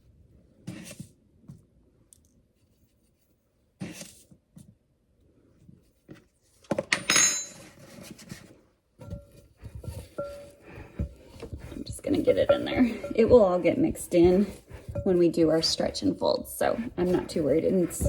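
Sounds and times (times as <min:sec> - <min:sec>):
dishes clinking: 0:06.8 - 0:07.8, 0:09.0 - 0:15.2.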